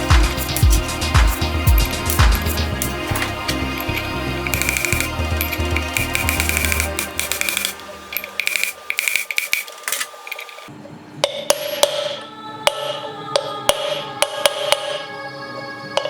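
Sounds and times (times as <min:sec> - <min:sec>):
background music: 0:00.0 - 0:10.7, 0:11.5 - 0:16.0.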